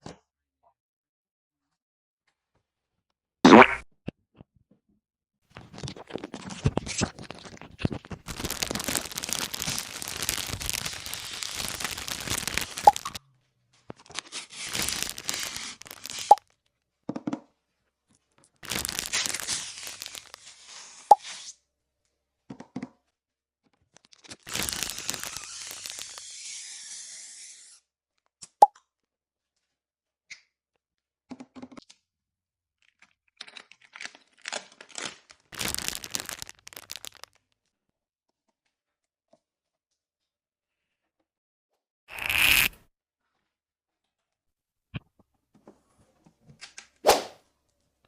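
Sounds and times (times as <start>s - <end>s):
packaging crunching and tearing: 5.6s - 13.2s, 14.0s - 16.5s, 18.6s - 20.6s, 24.2s - 26.4s, 33.4s - 37.4s, 42.1s - 42.8s.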